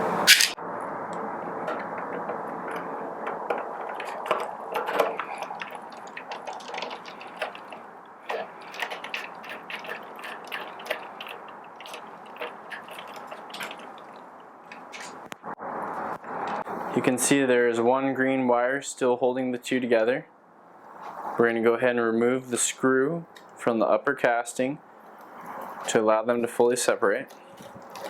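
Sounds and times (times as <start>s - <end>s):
steady low hiss: 0.0s - 3.5s
screwdriver and parts clicking: 0.3s - 0.6s.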